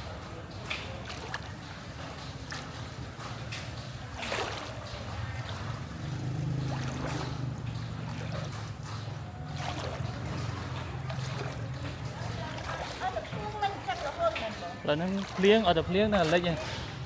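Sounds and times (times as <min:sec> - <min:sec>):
floodwater sloshing and splashing: 0:00.0 - 0:17.0
low engine hum: 0:02.8 - 0:12.7.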